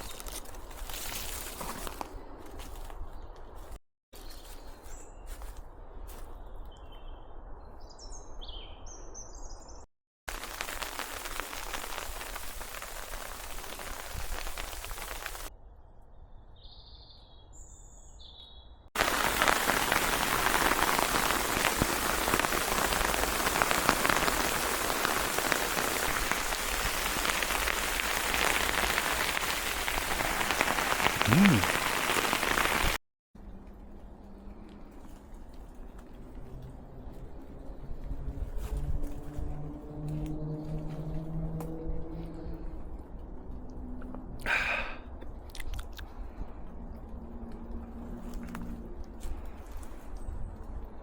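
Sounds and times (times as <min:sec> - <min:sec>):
steady rain falling: 0:10.3 - 0:15.5, 0:19.0 - 0:33.0.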